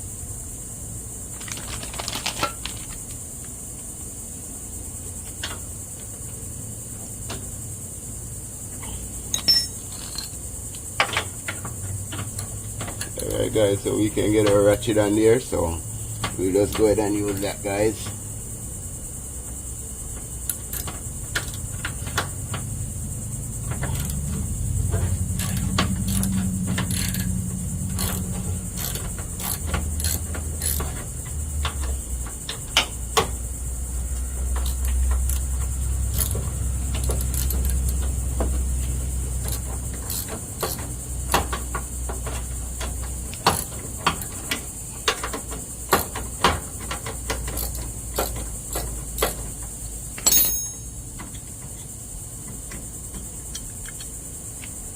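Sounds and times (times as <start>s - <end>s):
high insect drone: 0.0s - 54.9s
ratchet clicking: 9.3s - 15.2s, 20.2s - 33.4s, 34.4s - 51.9s
low vehicle rumble: 11.4s - 45.1s.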